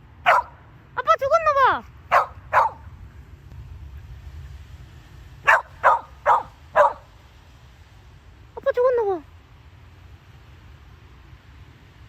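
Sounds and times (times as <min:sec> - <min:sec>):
dog barking: 0:00.2 - 0:00.6, 0:02.1 - 0:02.8, 0:05.4 - 0:07.1.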